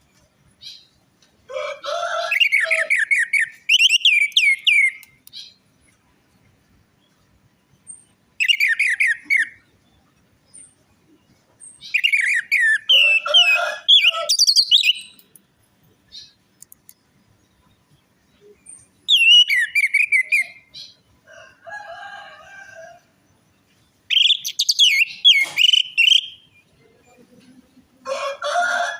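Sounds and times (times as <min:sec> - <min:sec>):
low rough bird call: 0:24.1 - 0:26.5.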